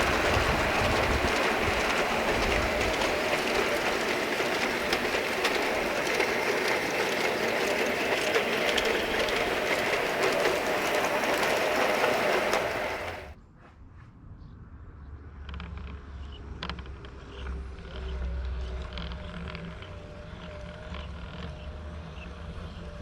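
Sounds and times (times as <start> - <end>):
model train wheels clicking: 0.0 - 13.4.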